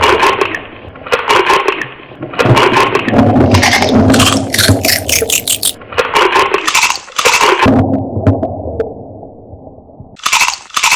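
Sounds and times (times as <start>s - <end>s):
crunchy food being chewed: 3.5s - 5.8s, 6.7s - 7.6s, 10.2s - 10.9s.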